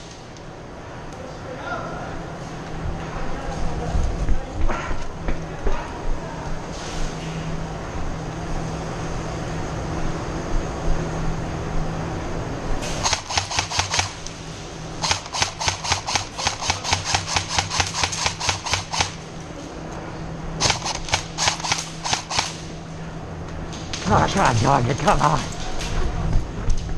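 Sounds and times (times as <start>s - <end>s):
airsoft gun firing bursts: 13.0s - 14.2s, 15.0s - 19.2s, 20.6s - 22.7s.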